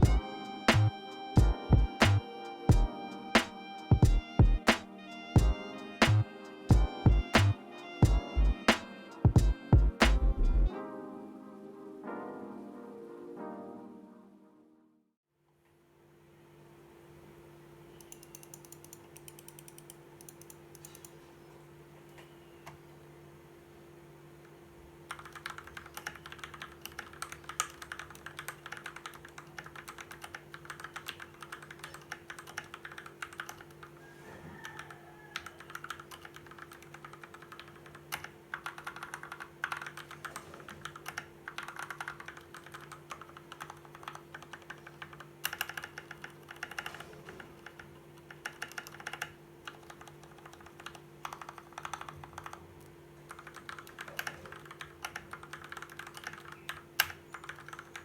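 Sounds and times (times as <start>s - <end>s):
fast typing on mechanical keyboard: 18.0s - 21.1s, 25.1s - 34.0s, 34.7s - 52.6s, 53.3s - 58.0s.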